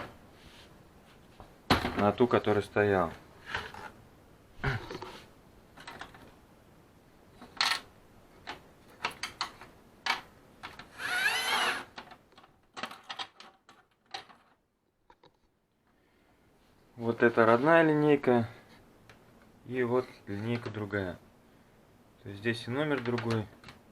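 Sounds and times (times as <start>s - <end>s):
plastic parts clicking and knocking: 5.7s - 6.4s, 7.4s - 10.9s, 11.9s - 15.4s, 22.8s - 23.9s.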